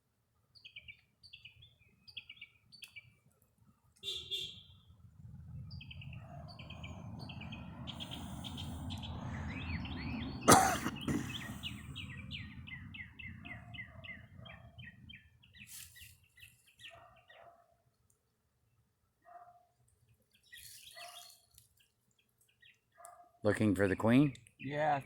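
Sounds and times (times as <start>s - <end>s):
songbird chirping: 0.4s - 3.4s, 4.0s - 23.4s, 24.1s - 25.0s
low rumble: 5.0s - 10.4s.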